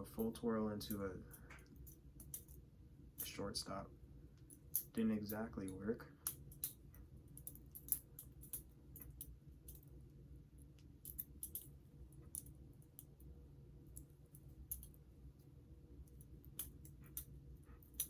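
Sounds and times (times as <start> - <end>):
butterfly knife clicking and clacking: 16.4 - 18.0.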